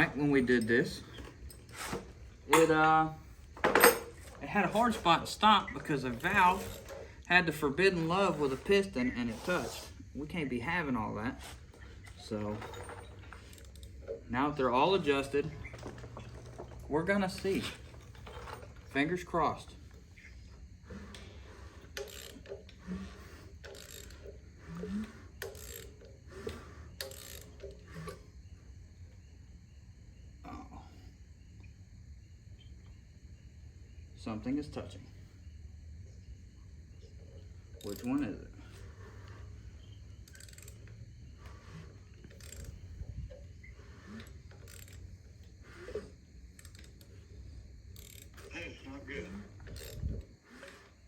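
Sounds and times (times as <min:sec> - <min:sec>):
metal scraping and knocks: 0:00.0 - 0:10.0
engine mechanical rattles: 0:00.0 - 0:29.8, 0:36.0 - 0:51.0
hand ratchet clicking: 0:20.9 - 0:28.2, 0:40.2 - 0:43.0, 0:43.8 - 0:47.2, 0:47.9 - 0:48.6.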